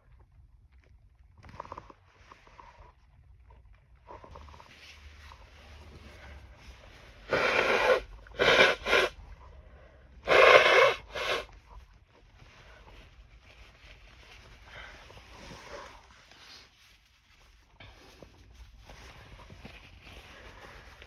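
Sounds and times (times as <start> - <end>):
person sneezing hard: 7.3 - 9.1, 10.3 - 11.5.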